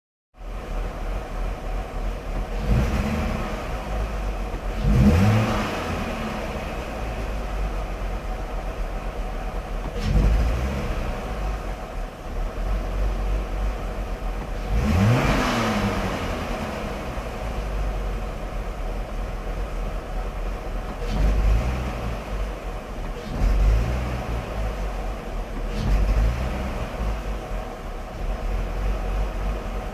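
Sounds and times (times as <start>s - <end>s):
engine revving: 2.3s - 29.9s.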